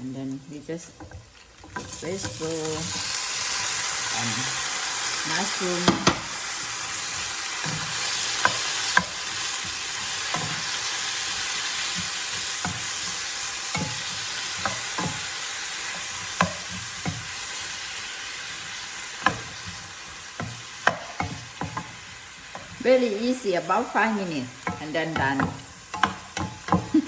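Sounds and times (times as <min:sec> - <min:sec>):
vegetables sizzling in oil: 0:00.0 - 0:27.0
utensil clicking against pan: 0:07.0 - 0:17.4, 0:19.1 - 0:22.8, 0:24.6 - 0:27.0.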